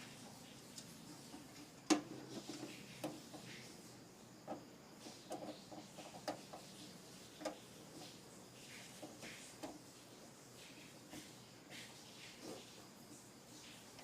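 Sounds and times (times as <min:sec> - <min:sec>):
computer hardware clicks and knocks: 0:00.8 - 0:03.5, 0:05.3 - 0:06.7, 0:07.4 - 0:08.0.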